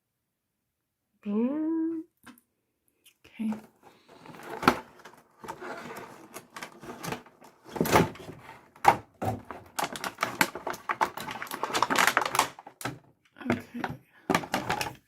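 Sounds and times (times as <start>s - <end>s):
packaging rustling: 3.7s - 13.1s, 14.3s - 15.0s.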